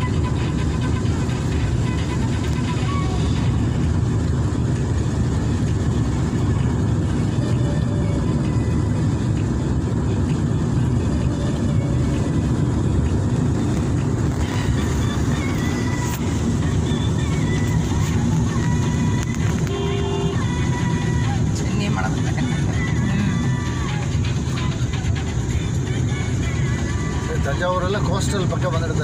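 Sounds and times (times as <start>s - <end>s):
vehicle driving in heavy rain: 0.0s - 27.6s.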